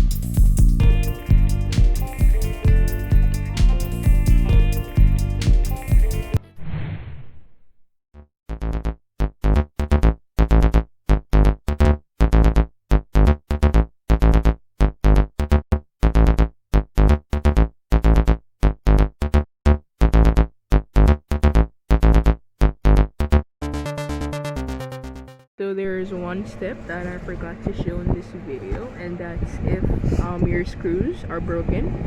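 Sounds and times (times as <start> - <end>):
electronic music synth chord stabs: 0.0 - 6.4, 23.6 - 25.4.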